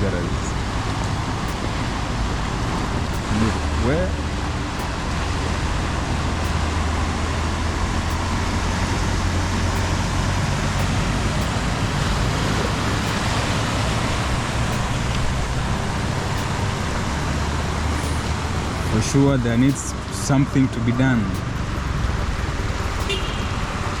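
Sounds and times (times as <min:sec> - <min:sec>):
vehicle engines humming in traffic: 0:00.0 - 0:24.0
heavy rain pouring: 0:00.6 - 0:19.1.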